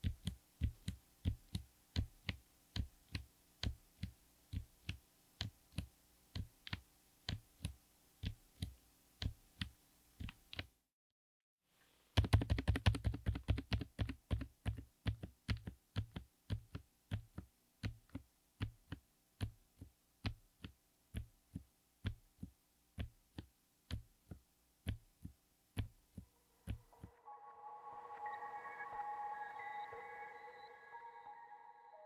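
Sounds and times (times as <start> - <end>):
typing on a mechanical keyboard: 12.2 - 27.0.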